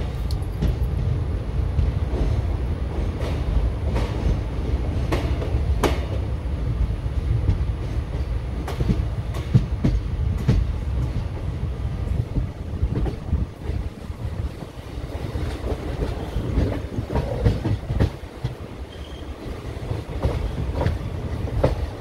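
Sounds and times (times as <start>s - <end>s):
train rumbling past: 0.0s - 22.0s
wheels clicking over rail joints: 12.1s - 22.0s.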